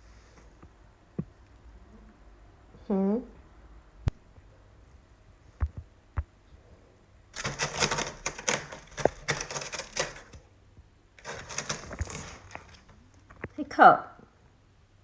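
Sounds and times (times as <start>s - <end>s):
packing paper crinkling: 7.4s - 10.4s, 11.2s - 13.3s.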